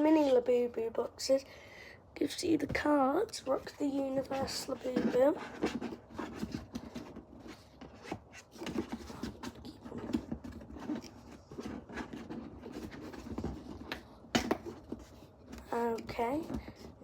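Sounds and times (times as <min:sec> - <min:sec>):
cardboard packaging rustling: 0:03.4 - 0:17.0.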